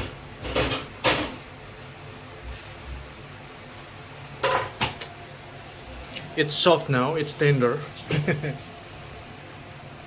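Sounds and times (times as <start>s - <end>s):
kitchen rustles and knocks: 0.0s - 1.5s, 4.4s - 5.0s.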